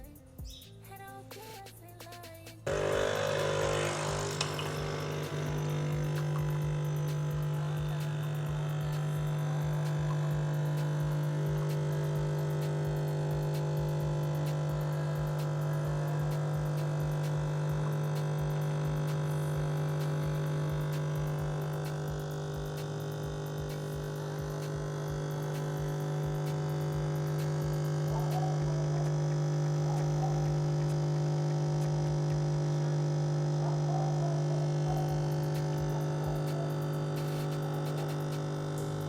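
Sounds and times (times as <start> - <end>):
hiss: 2.6 - 28.8, 35.0 - 39.0
low machine hum: 2.6 - 39.0.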